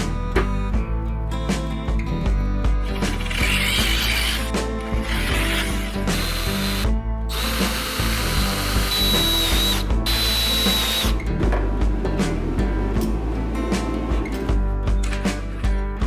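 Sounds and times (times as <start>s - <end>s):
background music with bass: 0.0s - 16.0s
power drill whining: 2.9s - 11.3s.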